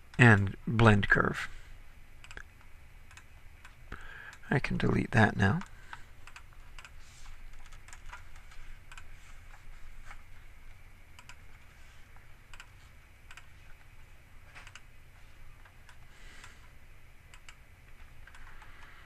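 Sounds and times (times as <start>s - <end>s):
low steady hum: 0.0s - 19.0s
computer keyboard typing: 5.6s - 10.2s, 11.2s - 11.6s, 12.5s - 13.8s, 14.6s - 14.8s, 17.3s - 19.0s.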